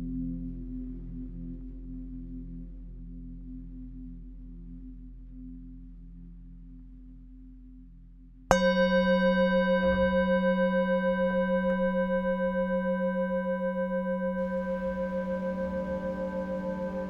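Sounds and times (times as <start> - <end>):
faint low drone: 0.0 - 17.0
singing bowl ringing: 8.5 - 17.0.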